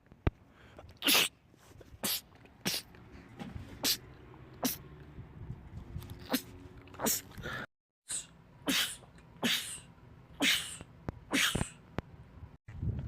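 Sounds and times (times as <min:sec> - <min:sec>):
man sneezing: 0:01.0 - 0:01.3, 0:08.1 - 0:10.8.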